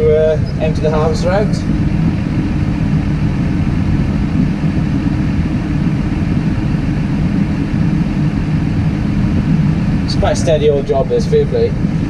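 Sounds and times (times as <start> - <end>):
tractor engine running: 0.0 - 12.0.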